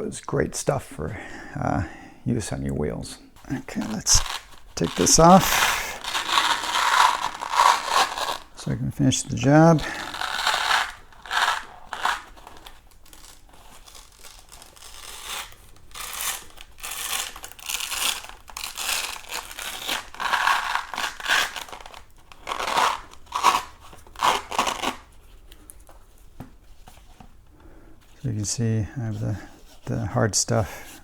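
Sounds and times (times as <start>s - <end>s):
velcro tearing apart: 3.5s - 25.1s.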